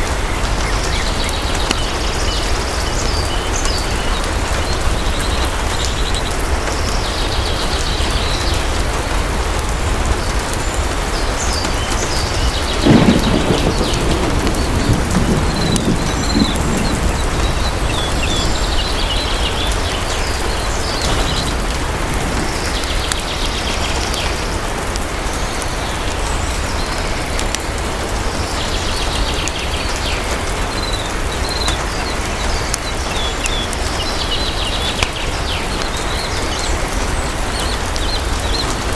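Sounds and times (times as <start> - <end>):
heavy rain falling: 12.0 - 38.9
thunder rumbling: 12.6 - 24.8.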